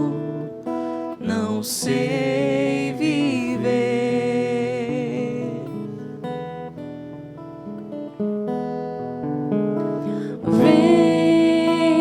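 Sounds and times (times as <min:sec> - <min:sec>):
person singing: 0:00.0 - 0:06.0, 0:10.1 - 0:12.0
acoustic guitar picking chords: 0:00.0 - 0:12.0.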